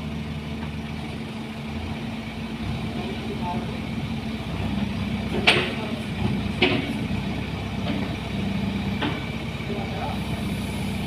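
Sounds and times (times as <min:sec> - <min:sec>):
diesel engine idling: 0:00.0 - 0:11.0.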